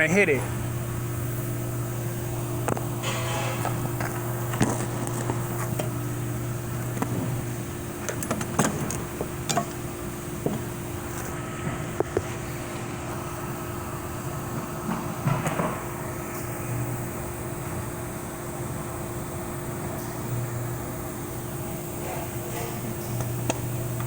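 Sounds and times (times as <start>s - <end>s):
fan humming: 0.0s - 24.0s.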